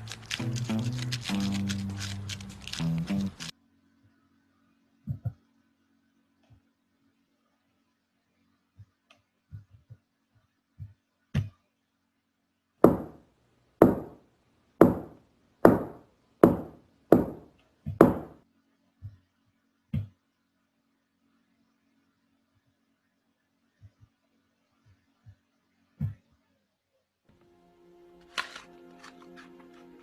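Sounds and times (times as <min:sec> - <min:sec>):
loud sharp knocks: 0:12.9 - 0:13.2, 0:13.8 - 0:14.2, 0:14.8 - 0:18.4.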